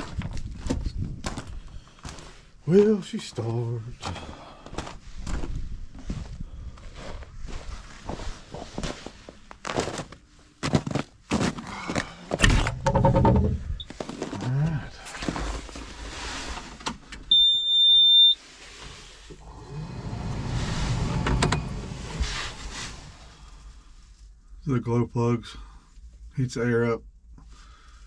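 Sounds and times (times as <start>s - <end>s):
thumps and clatter in cab: 12.4s - 13.8s.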